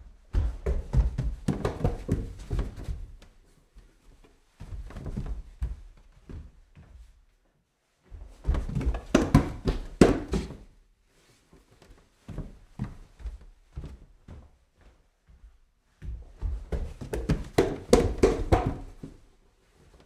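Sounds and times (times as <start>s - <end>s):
footsteps climbing stairs: 0.3s - 3.3s, 12.3s - 19.2s.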